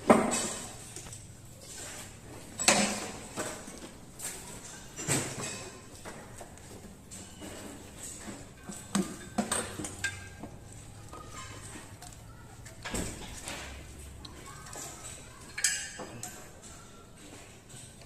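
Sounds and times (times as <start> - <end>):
metal tools clinking: 7.1 - 12.1, 14.5 - 18.0.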